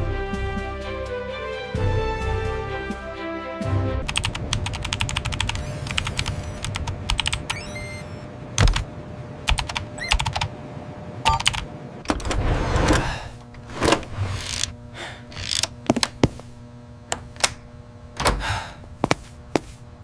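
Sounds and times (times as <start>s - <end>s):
faint steady hum: 4.0s - 20.0s.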